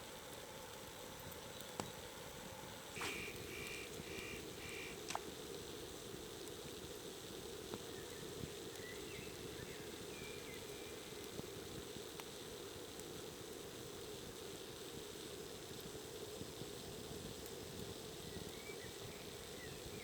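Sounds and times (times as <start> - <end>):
faint chirps: 2.9 - 5.2, 7.8 - 11.4.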